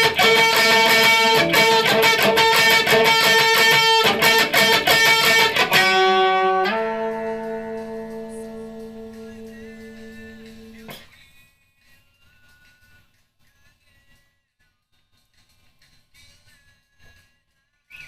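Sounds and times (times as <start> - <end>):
electric guitar strumming chords: 0.0 - 11.0.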